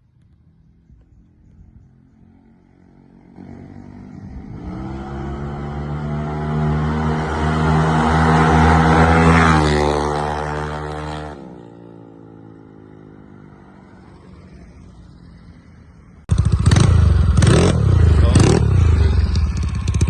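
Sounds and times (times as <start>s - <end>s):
loud engine sound: 3.3s - 11.8s, 16.2s - 20.0s
scooter engine running: 16.3s - 20.0s.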